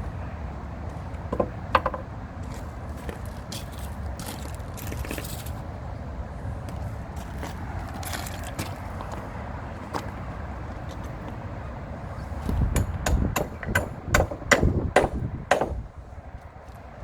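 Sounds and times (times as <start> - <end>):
hammer striking: 12.5 - 15.9.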